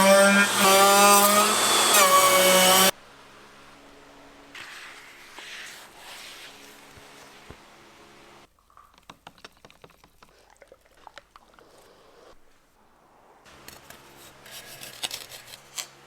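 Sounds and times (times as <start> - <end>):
power tool running: 0.0 - 2.9.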